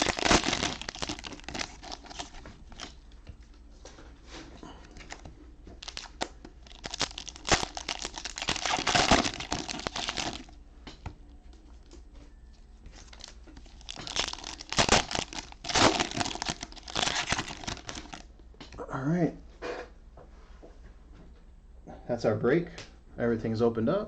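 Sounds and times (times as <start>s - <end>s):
cellophane wrappers crinkling: 0.0s - 3.1s, 4.8s - 10.6s, 12.9s - 18.3s.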